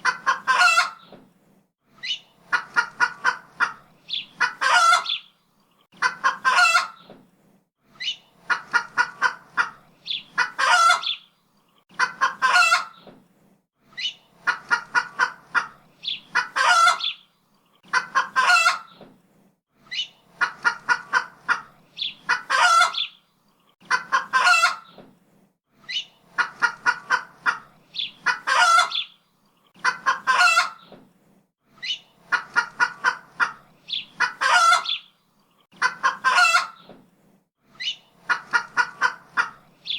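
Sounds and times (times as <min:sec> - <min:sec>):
chicken clucking and squawking: 0:00.0 - 0:01.1, 0:02.0 - 0:05.3, 0:06.0 - 0:07.1, 0:08.0 - 0:11.3, 0:11.9 - 0:13.1, 0:14.0 - 0:19.0, 0:19.9 - 0:23.2, 0:23.8 - 0:25.0, 0:25.9 - 0:30.9, 0:31.8 - 0:35.1, 0:35.8 - 0:36.9, 0:37.8 - 0:39.9.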